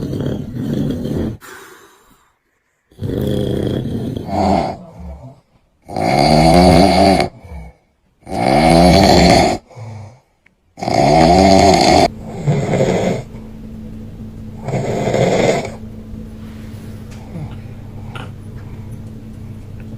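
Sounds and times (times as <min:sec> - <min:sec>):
man snoring loudly: 0:00.0 - 0:01.8, 0:02.9 - 0:13.3, 0:14.6 - 0:15.8.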